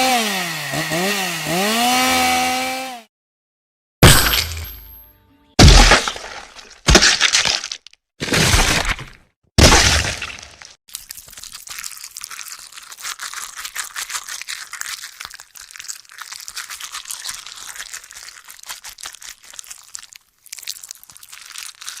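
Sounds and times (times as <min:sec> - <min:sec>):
gory crunching and tearing: 0:05.6 - 0:22.0.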